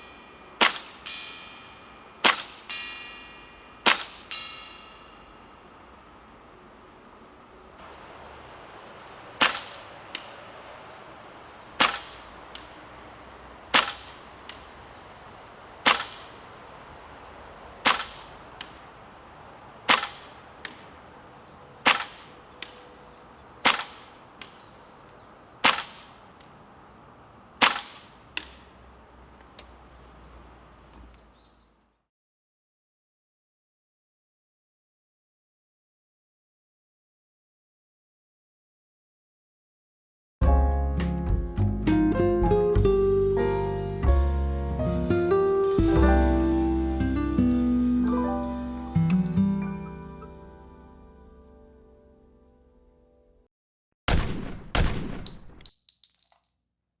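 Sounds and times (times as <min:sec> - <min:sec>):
airsoft pistol shots: 0:13.7 - 0:14.6, 0:15.8 - 0:16.4, 0:17.8 - 0:18.8, 0:21.8 - 0:22.8, 0:23.6 - 0:24.6, 0:25.6 - 0:26.2, 0:27.6 - 0:28.6, 0:54.1 - 0:55.6.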